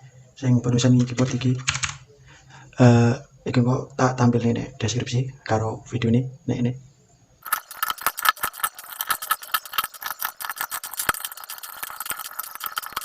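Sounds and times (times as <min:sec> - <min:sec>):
small plastic parts rattling: 0:07.4 - 0:13.0.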